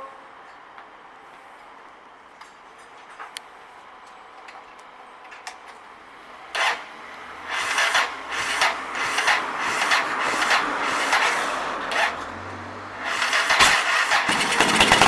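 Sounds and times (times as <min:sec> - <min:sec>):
electric starter cranking engine: 0:06.4 - 0:15.0.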